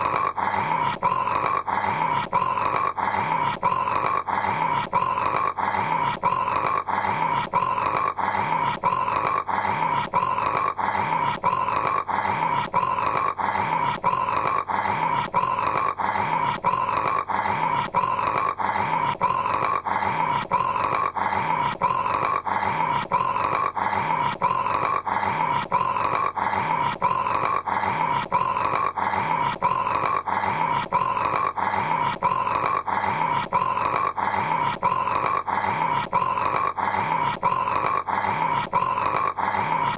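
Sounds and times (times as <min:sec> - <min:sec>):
man snoring: 0:00.0 - 0:39.9.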